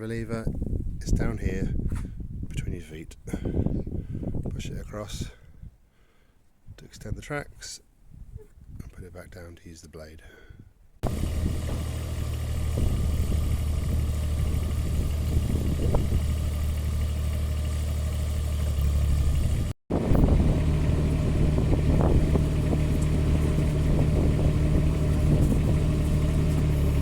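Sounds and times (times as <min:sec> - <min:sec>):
excavator diesel engine running: 0:11.0 - 0:27.0.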